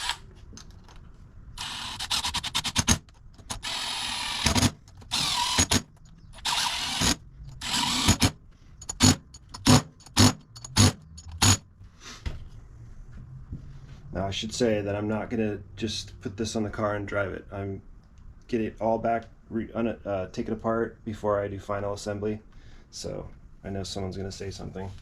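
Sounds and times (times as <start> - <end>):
ratchet metal clicks: 1.6 - 11.6.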